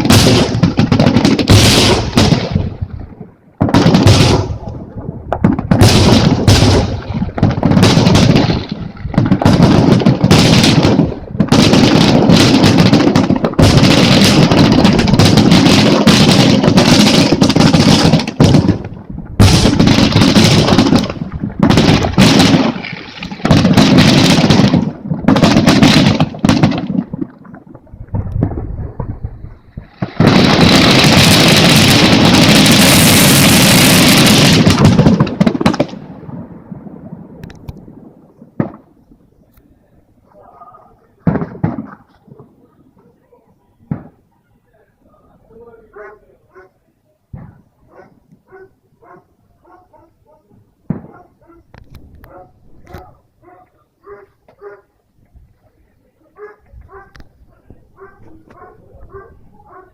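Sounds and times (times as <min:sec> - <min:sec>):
fireworks booming: 0:00.0 - 0:43.2, 0:43.8 - 0:44.3, 0:47.3 - 0:48.1, 0:50.6 - 0:54.8
hissing crackle of fireworks: 0:00.0 - 0:44.3.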